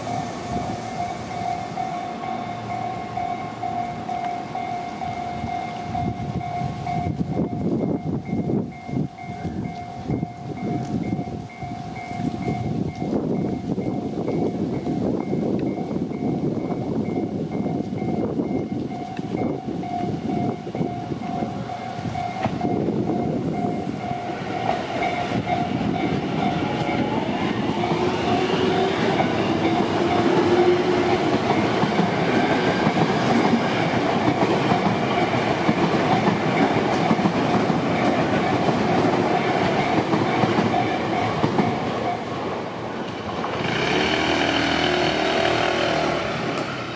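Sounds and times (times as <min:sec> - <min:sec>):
crossing warning bell dinging: 0:00.0 - 0:46.9
train wheels clacking: 0:17.2 - 0:42.3, 0:43.0 - 0:46.9
road vehicle engine: 0:43.1 - 0:46.9.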